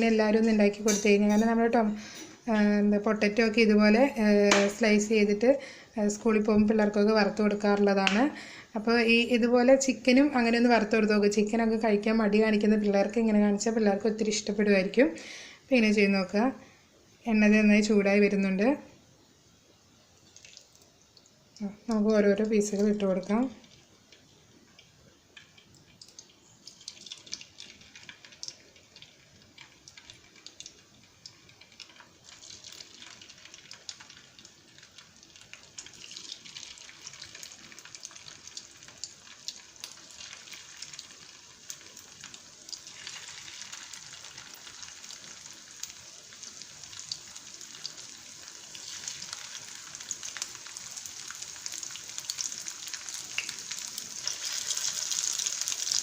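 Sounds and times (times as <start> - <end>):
chicken sizzling in hot oil: 25.2 - 56.0.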